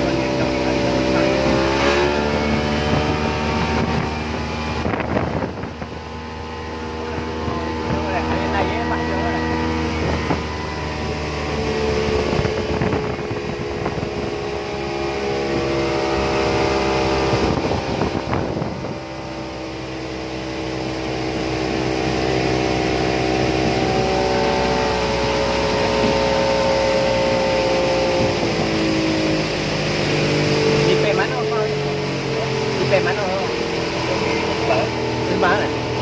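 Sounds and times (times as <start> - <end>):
boat engine running: 0.0 - 36.0.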